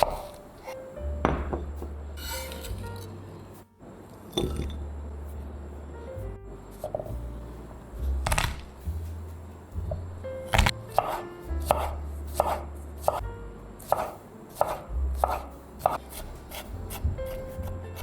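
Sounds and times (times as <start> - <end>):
knife chopping on cutting board: 0.0 - 3.1, 8.2 - 8.7, 10.5 - 13.2, 13.8 - 18.0.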